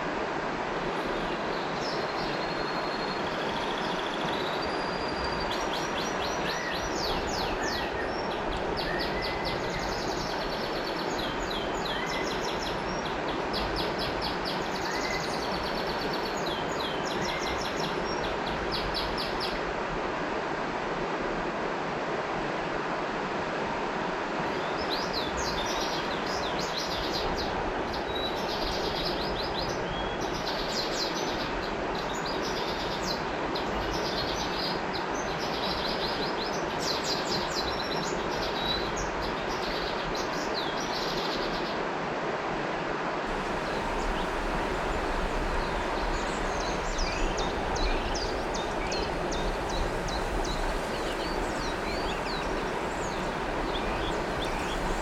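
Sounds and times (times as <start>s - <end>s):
river water flowing: 0.0s - 55.0s
birds singing: 43.3s - 55.0s.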